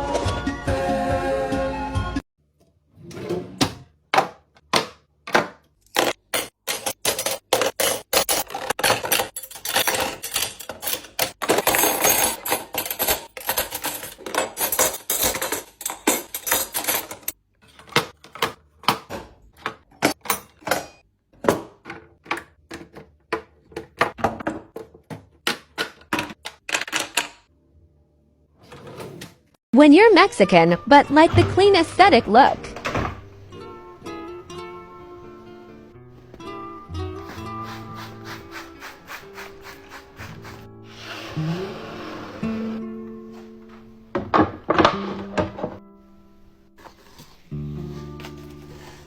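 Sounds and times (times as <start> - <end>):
hard objects clicking and clattering: 5.6 - 27.5.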